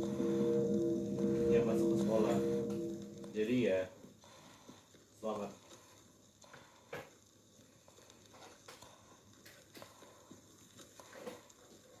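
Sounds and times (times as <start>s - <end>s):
faint clicks and taps: 4.6s - 12.0s.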